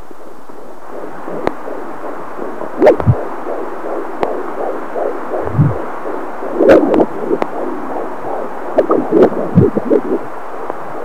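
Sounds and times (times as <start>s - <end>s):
fetal heartbeat whooshing pulses: 0.0s - 11.0s
steady hiss: 0.0s - 11.0s
thumps and clicks: 2.8s - 3.2s.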